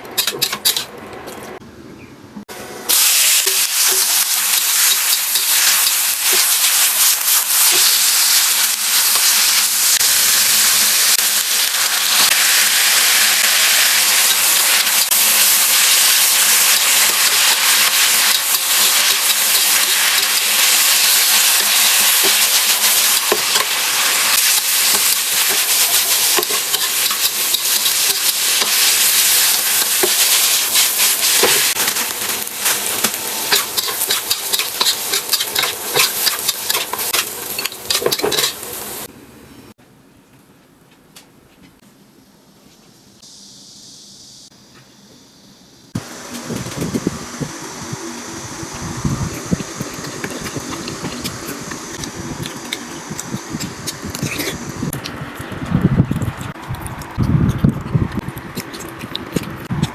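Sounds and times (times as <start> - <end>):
food sizzling in a pan: 2.9 - 39.1.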